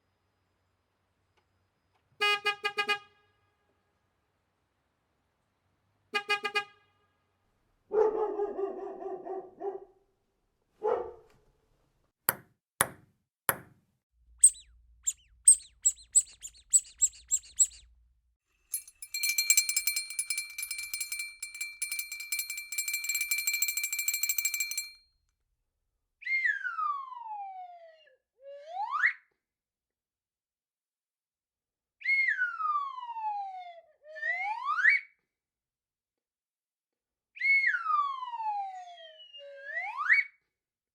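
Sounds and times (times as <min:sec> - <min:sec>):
sliding whistle: 0:14.4 - 0:17.9
wavering pitched call: 0:14.4 - 0:17.9
high chirps: 0:14.4 - 0:18.0
bell ringing rapidly: 0:15.5 - 0:17.8, 0:18.7 - 0:25.0.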